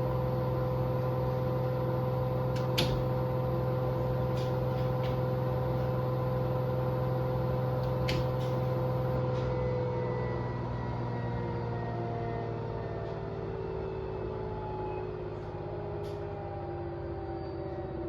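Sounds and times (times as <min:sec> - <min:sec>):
washing machine spinning: 0:00.0 - 0:09.2.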